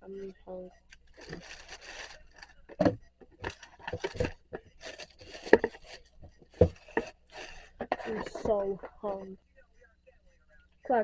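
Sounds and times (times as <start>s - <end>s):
objects scraping and knocking: 1.0s - 9.2s.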